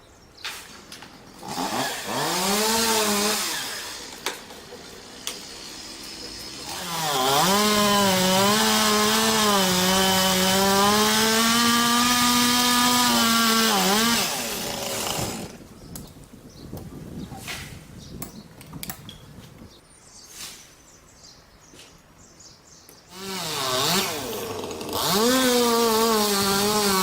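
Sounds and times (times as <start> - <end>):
chainsaw cutting wood: 0.5 - 15.7, 23.1 - 27.0.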